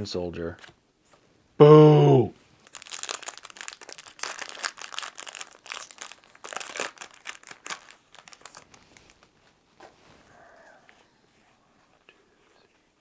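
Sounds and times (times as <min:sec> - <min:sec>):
foil wrapper crinkling and tearing: 0:02.5 - 0:09.4.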